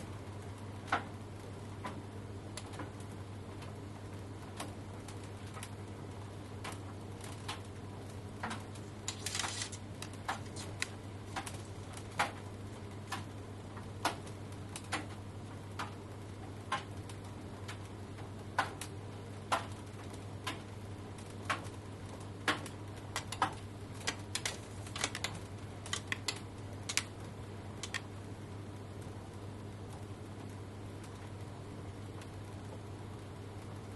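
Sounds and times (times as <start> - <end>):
tumble dryer humming: 22.8 - 28.6.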